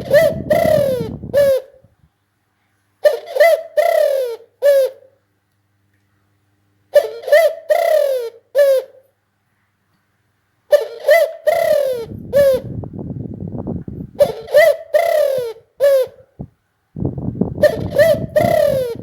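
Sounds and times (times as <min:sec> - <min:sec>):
dove cooing: 0:00.0 - 0:01.9, 0:03.0 - 0:05.2, 0:06.9 - 0:09.0, 0:10.7 - 0:12.8, 0:14.1 - 0:16.4, 0:17.6 - 0:19.0.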